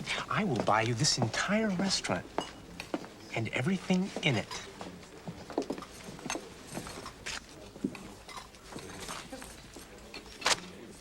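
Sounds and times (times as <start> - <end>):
faint chatter: 0.0 - 11.0
cutlery and dishes clinking: 0.6 - 3.1, 4.2 - 10.9.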